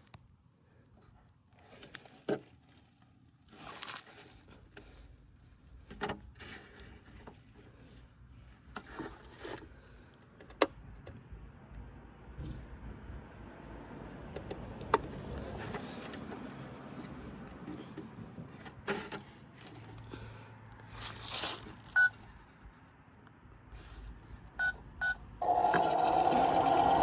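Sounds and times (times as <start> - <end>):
toy motor humming: 25.4 - 27.0.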